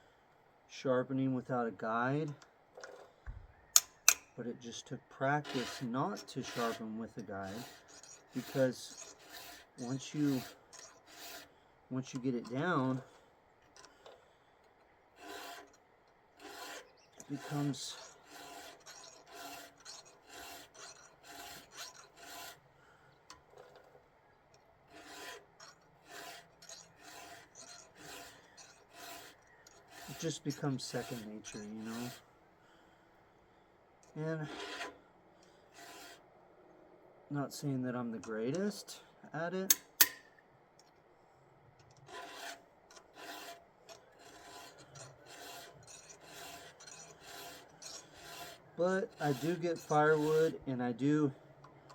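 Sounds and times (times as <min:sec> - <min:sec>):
file rasping on chainsaw chain: 0:03.7 - 0:24.0, 0:24.6 - 0:32.3, 0:34.0 - 0:36.3, 0:41.9 - 0:51.9.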